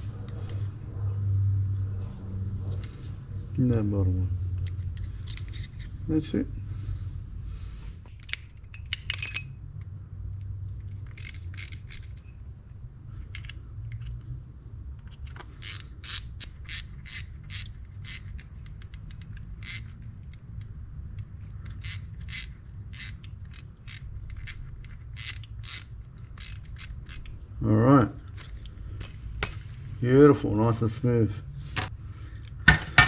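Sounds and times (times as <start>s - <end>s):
low steady hum: 0.0s - 33.0s
metal reel parts clicking and scraping: 4.6s - 6.0s, 8.0s - 9.9s, 10.8s - 12.5s, 15.0s - 27.4s.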